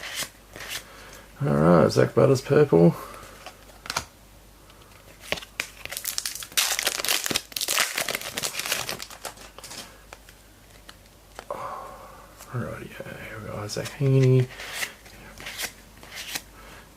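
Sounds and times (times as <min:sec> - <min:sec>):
plastic wrapper crinkling: 0:05.6 - 0:09.9.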